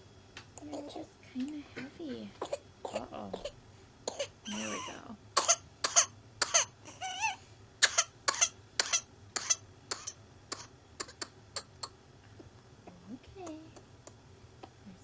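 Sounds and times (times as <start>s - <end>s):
child hacking coughs: 4.1s - 6.7s, 7.8s - 11.7s.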